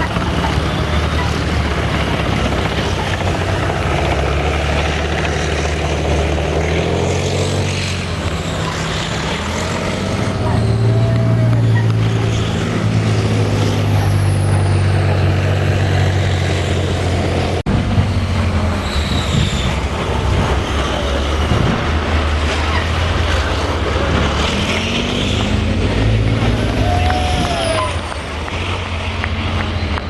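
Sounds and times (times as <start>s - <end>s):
diesel engine running: 0.0s - 30.0s
faint high squeals: 26.8s - 28.2s.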